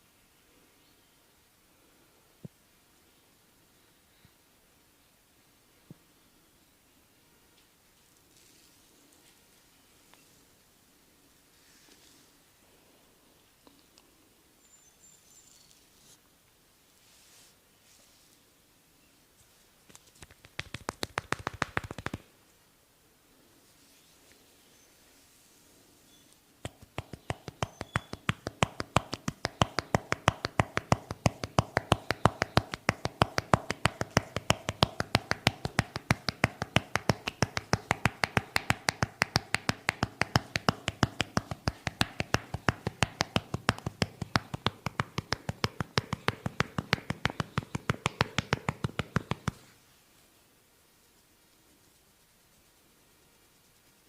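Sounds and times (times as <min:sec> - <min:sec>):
hands tapping on head: 0:20.0 - 0:22.3, 0:26.6 - 0:49.7.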